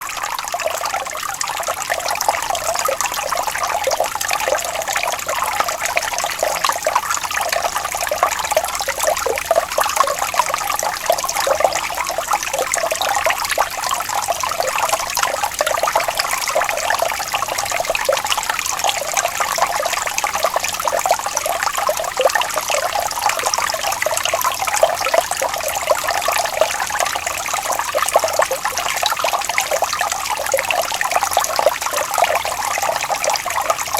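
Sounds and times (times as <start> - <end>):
water trickling and splashing: 0.0 - 33.9.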